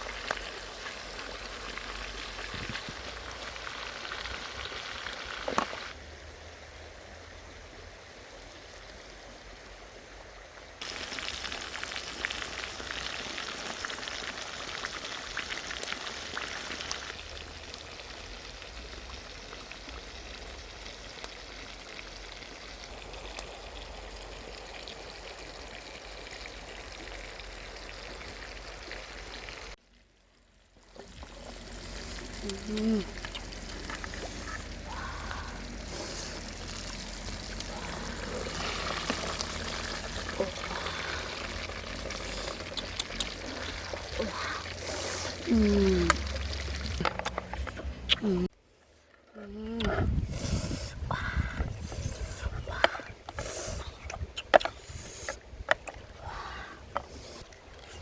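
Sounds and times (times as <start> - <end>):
pork sizzling in a frying pan: 10.8 - 24.8, 35.6 - 44.1.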